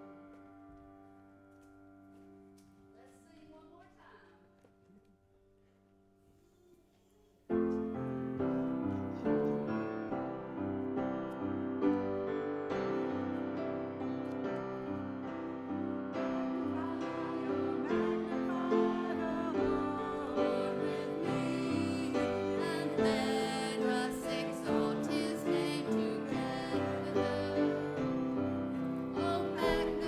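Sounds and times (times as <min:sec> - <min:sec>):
piano playing chords and melody: 0:00.0 - 0:02.6, 0:07.5 - 0:30.0.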